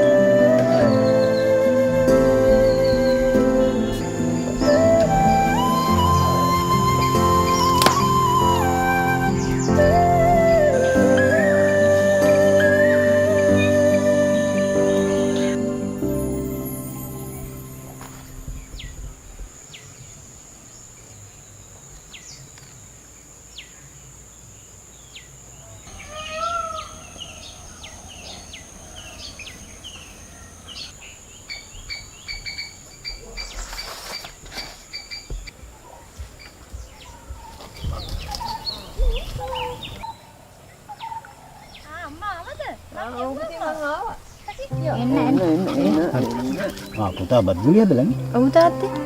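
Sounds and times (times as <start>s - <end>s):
insect drone: 0.0s - 35.3s
birds chirping and warbling: 0.0s - 49.0s
dull low knocks: 0.5s - 12.2s.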